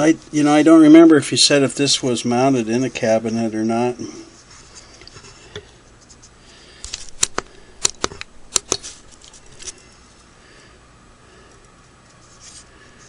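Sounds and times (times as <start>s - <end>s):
sharp clicks and light taps: 6.9s - 8.8s.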